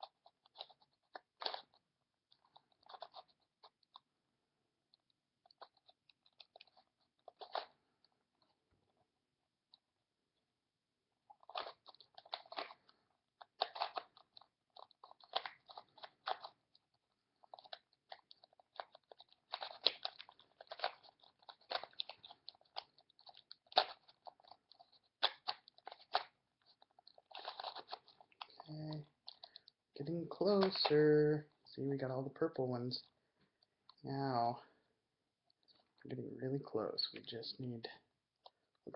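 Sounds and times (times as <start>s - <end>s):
puzzle cube clicking and rattling: 0.0s - 4.1s, 5.0s - 9.0s, 11.2s - 34.1s.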